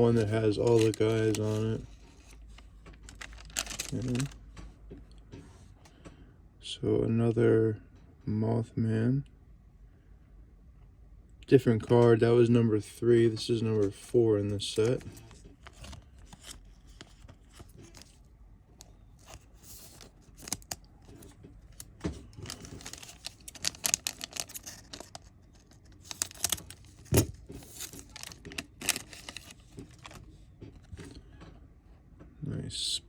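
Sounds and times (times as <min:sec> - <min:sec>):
foil pack tearing and crinkling: 0:00.0 - 0:02.4, 0:03.0 - 0:04.4, 0:19.2 - 0:30.2
cards rustling and clicking: 0:00.0 - 0:04.7, 0:13.3 - 0:31.2.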